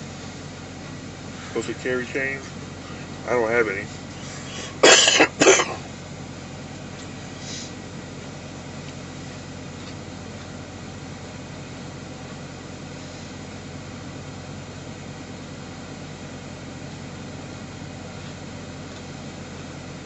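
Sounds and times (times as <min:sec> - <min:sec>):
diesel truck engine idling: 0:00.0 - 0:20.0
person coughing: 0:04.6 - 0:05.8.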